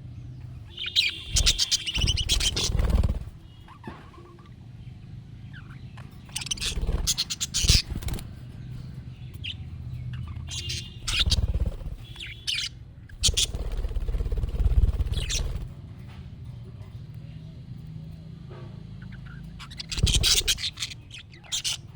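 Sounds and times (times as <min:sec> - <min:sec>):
budgerigars chirping: 0:00.5 - 0:04.4, 0:05.5 - 0:08.4, 0:09.2 - 0:15.7, 0:19.0 - 0:21.9.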